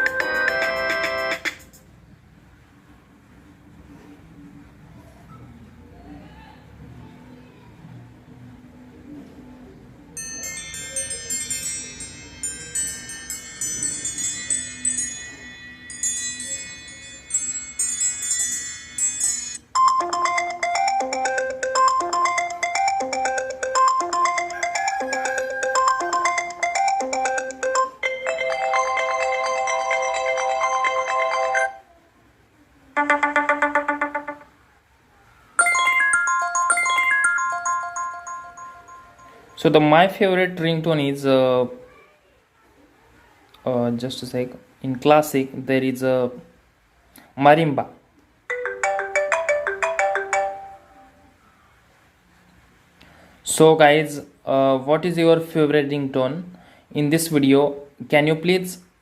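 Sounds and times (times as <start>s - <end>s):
bright chiming ringtone: 0.0s - 1.6s, 10.2s - 31.8s, 33.0s - 34.5s, 35.6s - 40.0s, 48.5s - 51.4s
lower mallet-like ringtone: 10.2s - 31.8s, 35.6s - 40.0s, 48.5s - 51.3s.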